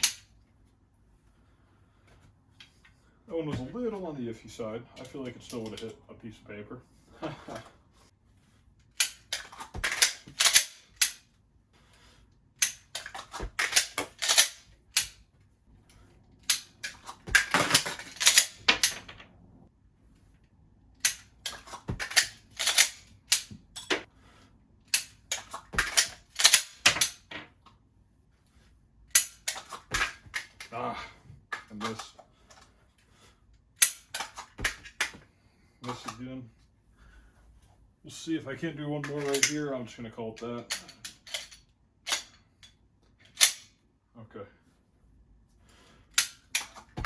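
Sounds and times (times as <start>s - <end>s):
pistol slide racking: 0.0s - 0.2s, 8.9s - 11.2s, 12.6s - 15.2s, 16.4s - 19.1s, 21.0s - 24.1s, 24.9s - 27.3s, 29.1s - 30.7s, 33.8s - 35.2s, 40.7s - 43.7s, 46.1s - 47.0s
pistol metallic clicks and clacks: 0.0s - 0.3s, 8.9s - 11.3s, 12.6s - 15.2s, 16.4s - 19.1s, 21.0s - 24.1s, 24.9s - 27.3s, 29.1s - 30.7s, 33.8s - 35.2s, 39.0s - 39.6s, 40.4s - 43.8s, 46.1s - 47.0s.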